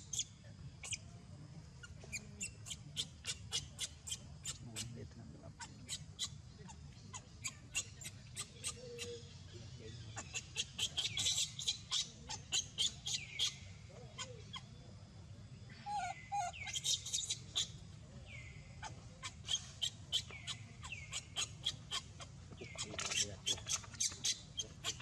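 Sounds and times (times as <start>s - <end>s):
high-pitched animal chirps: 7.1s - 9.3s, 10.2s - 13.6s, 15.8s - 17.8s, 19.2s - 25.0s.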